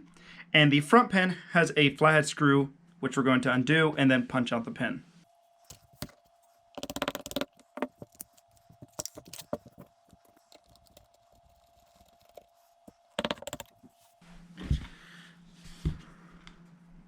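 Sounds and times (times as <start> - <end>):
small metal clicks and rattles: 5.7 - 13.8.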